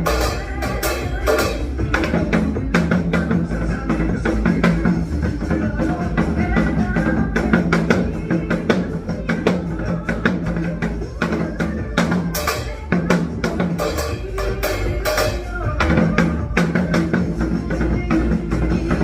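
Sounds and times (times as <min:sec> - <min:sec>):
bass line: 0:00.0 - 0:19.0
drum beat: 0:00.0 - 0:19.0.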